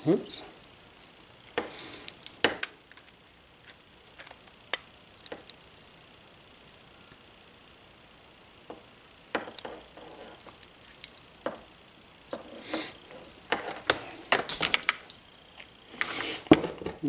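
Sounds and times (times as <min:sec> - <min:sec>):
tools and parts clicking: 0:13.1 - 0:16.5.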